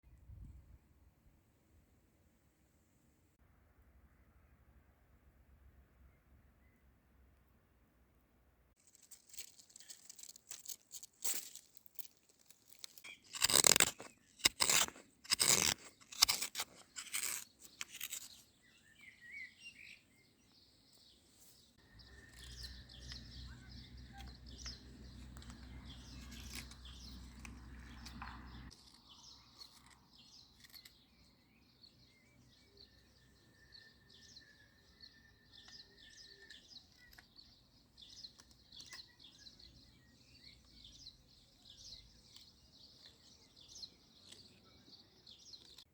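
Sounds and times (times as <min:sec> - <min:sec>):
loud sharp crunches: 0:08.8 - 0:18.4, 0:22.1 - 0:29.0
birds chirping: 0:17.2 - 0:45.9.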